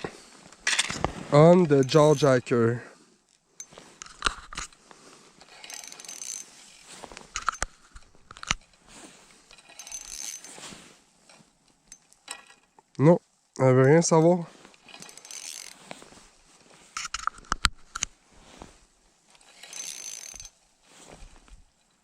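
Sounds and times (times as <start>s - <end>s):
sharp reel clicks: 5.4s - 6.5s, 9.5s - 10.5s, 14.8s - 15.9s, 19.4s - 20.6s
fishing reel whirring and ratcheting: 5.4s - 8.7s, 9.4s - 10.6s, 14.8s - 15.9s, 19.4s - 20.6s.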